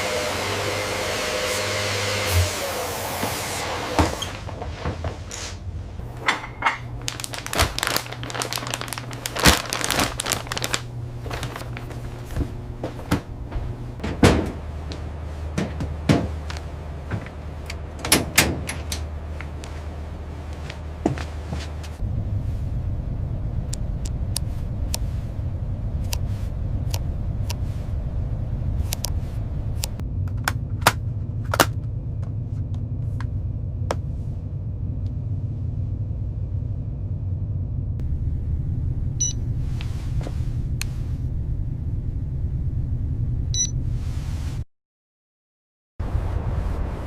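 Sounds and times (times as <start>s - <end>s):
steady low rumble: 4.3s - 44.6s, 46.0s - 47.0s.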